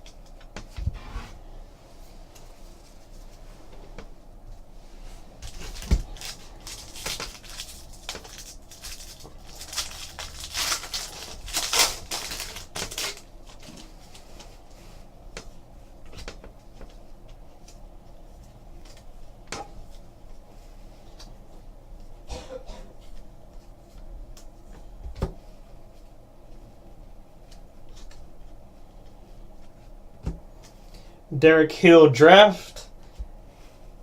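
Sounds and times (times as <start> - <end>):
card wrappers crinkling and tearing: 5.4 - 13.8
cards being handled: 5.4 - 14.2.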